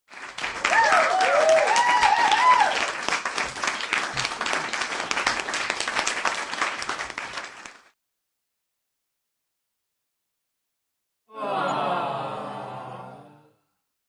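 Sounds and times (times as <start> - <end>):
crowd applause: 0.1 - 7.9, 11.4 - 13.3
voices whooping and shouting: 0.7 - 2.8.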